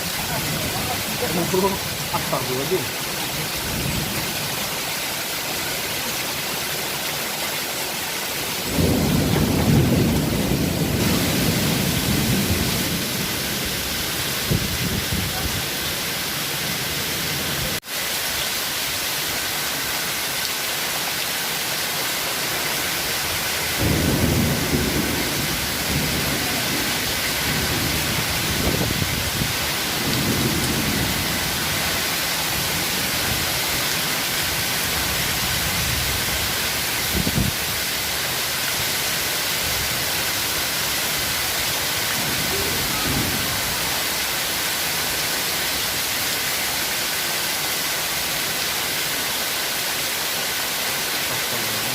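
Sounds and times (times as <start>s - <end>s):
heavy rain pouring: 0.0s - 51.9s
thunder rumbling: 8.7s - 15.6s, 23.8s - 33.9s, 42.2s - 43.9s.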